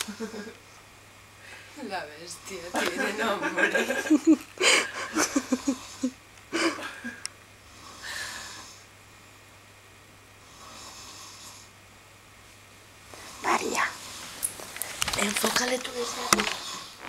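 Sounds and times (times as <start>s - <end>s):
stifled giggling: 0.0s - 0.6s, 2.8s - 7.3s
slow sleeping breaths: 4.6s - 8.9s, 10.4s - 11.8s, 16.0s - 17.0s
faint snoring breath: 7.7s - 8.9s, 10.4s - 11.8s, 16.0s - 17.0s.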